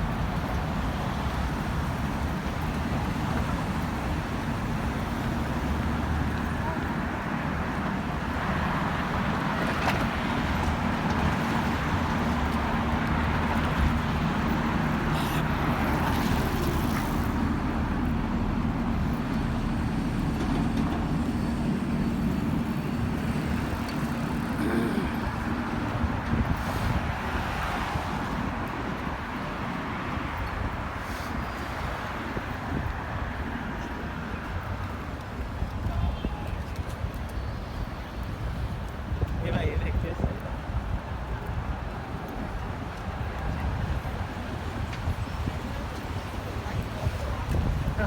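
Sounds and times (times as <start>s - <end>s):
road traffic engines humming: 0.0s - 48.0s.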